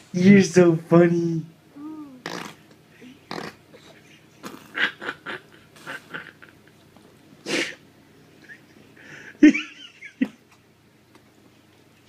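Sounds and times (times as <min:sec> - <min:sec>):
baby blowing raspberries: 0:02.0 - 0:04.6.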